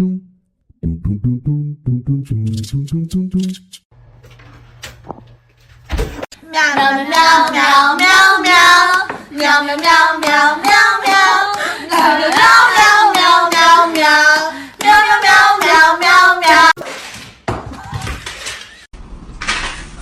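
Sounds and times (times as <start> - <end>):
high voice singing sustained notes: 0.0 - 3.7.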